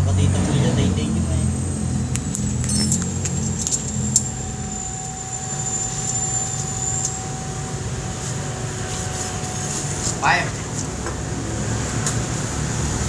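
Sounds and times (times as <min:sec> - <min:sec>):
faint high whine: 0:01.2 - 0:10.6
scooter engine idling: 0:01.2 - 0:11.5.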